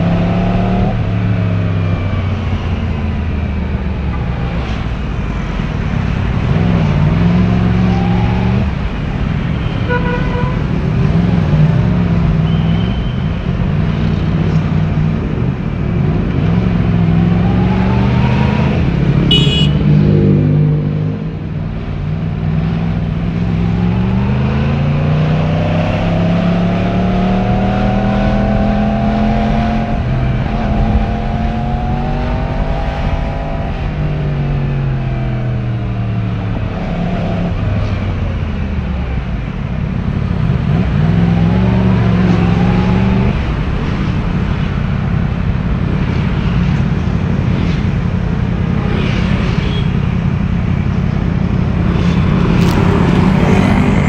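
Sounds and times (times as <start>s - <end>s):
motorcycle engine revving: 48.7s - 54.0s.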